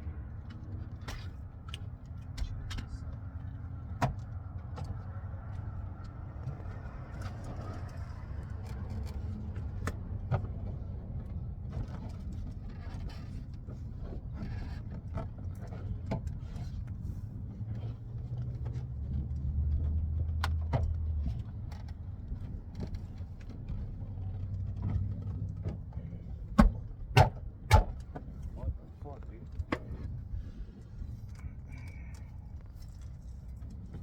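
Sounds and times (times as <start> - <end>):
steady low rumble: 22.2 - 34.0.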